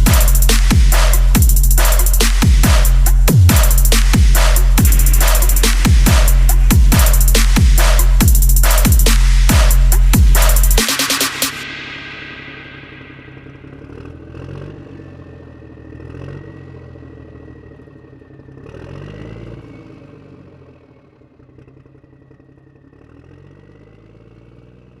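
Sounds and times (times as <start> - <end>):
steady high whine: 0.0 - 17.8
engine running: 0.0 - 23.8.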